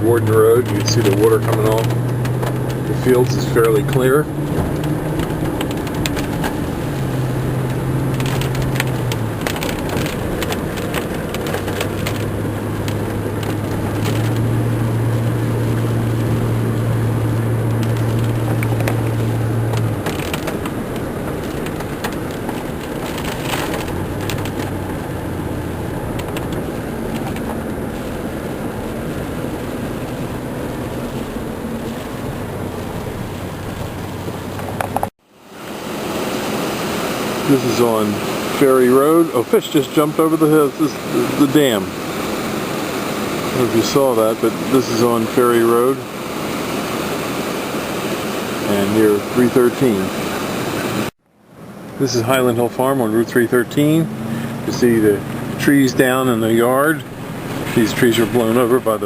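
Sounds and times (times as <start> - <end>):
car engine hum inside cabin: 0.0 - 59.0
knocks and rattles: 0.5 - 14.7, 16.2 - 30.3, 31.8 - 35.1.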